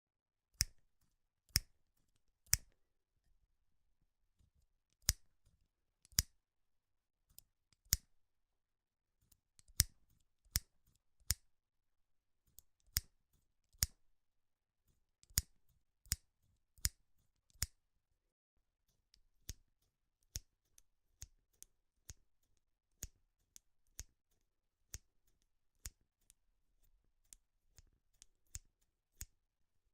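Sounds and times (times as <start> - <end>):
scissors snipping: 0.6 - 0.8, 5.0 - 5.3, 27.3 - 29.4.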